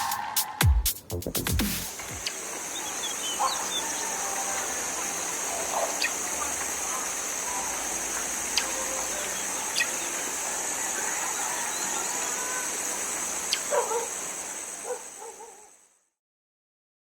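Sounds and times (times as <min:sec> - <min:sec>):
high-pitched hiss: 0:00.0 - 0:15.8
dog barking: 0:03.2 - 0:04.6, 0:05.4 - 0:07.1, 0:13.6 - 0:14.2, 0:14.8 - 0:15.7.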